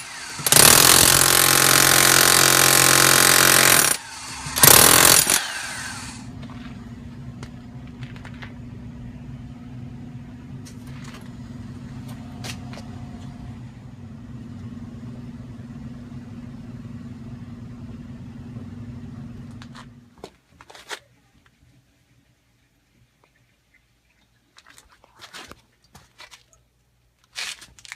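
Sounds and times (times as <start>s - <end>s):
low motor hum: 0.0s - 20.2s.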